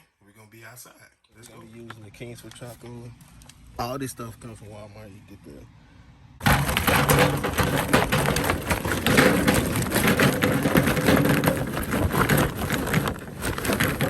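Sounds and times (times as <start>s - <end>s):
charcoal briquettes clattering into grill: 6.4s - 14.0s.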